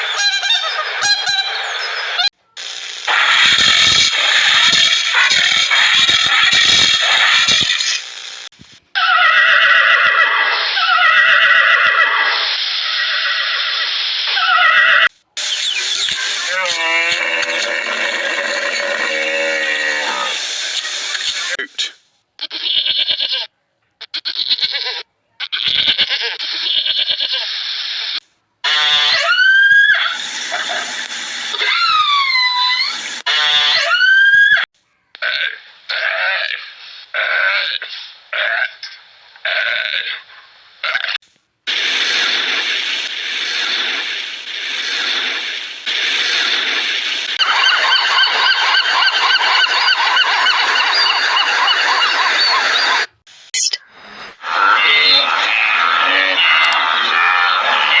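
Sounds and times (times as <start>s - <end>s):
harsh pulsing animal cries: 9.0s - 15.1s, 16.2s - 21.6s, 28.6s - 30.8s, 31.5s - 38.8s, 47.4s - 53.1s, 54.4s - 58.0s
drawn-out rising and falling calls: 9.0s - 21.6s, 41.9s - 58.0s
steady noisy hiss: 40.5s - 47.6s.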